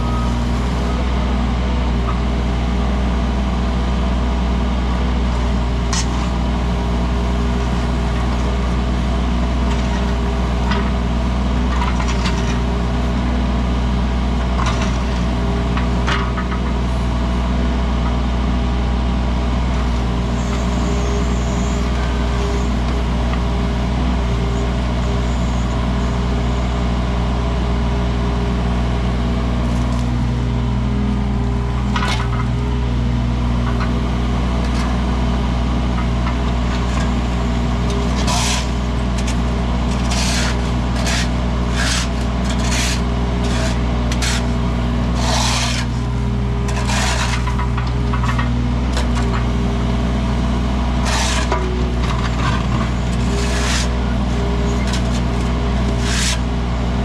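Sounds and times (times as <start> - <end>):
diesel engine running: 0.0 - 57.0
bucket scraping through soil: 36.8 - 46.1, 46.7 - 48.4, 50.9 - 56.4.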